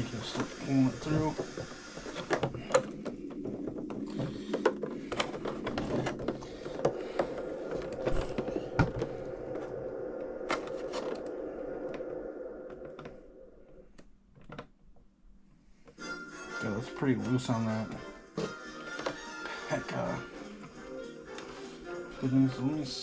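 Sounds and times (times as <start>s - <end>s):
steady background tone: 0.0s - 18.3s.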